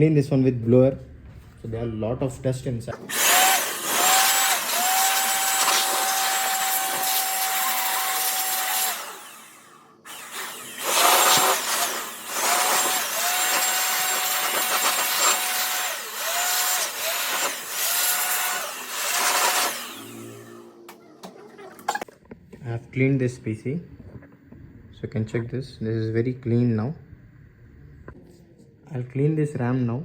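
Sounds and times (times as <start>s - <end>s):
electric blower motor whine: 3.1s - 21.0s.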